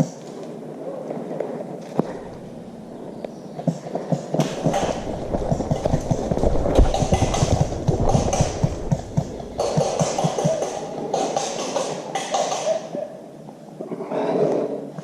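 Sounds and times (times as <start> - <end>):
constant rustle: 0.0 - 12.6
running footsteps thudding: 3.7 - 11.8.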